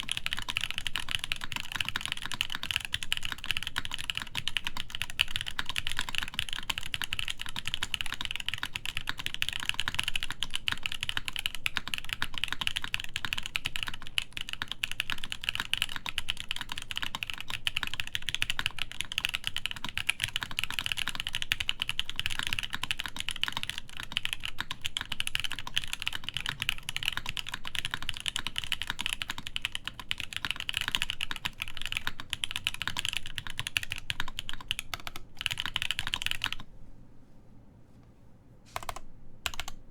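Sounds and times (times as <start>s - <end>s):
fast typing on mechanical keyboard: 0.0s - 36.7s, 38.7s - 39.8s.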